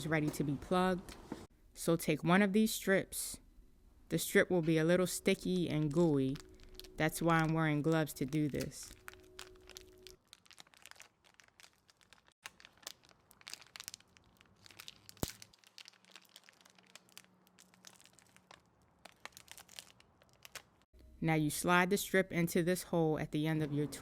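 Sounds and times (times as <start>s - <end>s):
crinkling and crackles of sticky strip: 5.7s - 20.9s.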